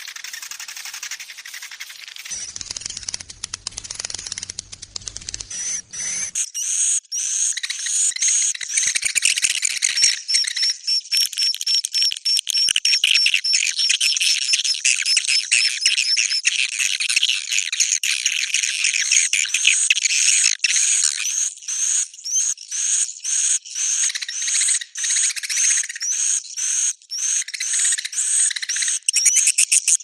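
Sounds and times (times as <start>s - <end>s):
songbirds chirping and trilling: 0.2s - 10.8s.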